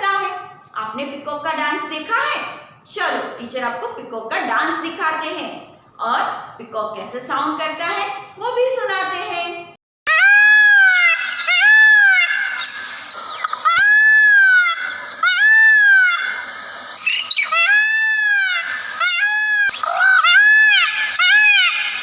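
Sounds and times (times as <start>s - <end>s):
peacock calling: 10.1s - 22.0s.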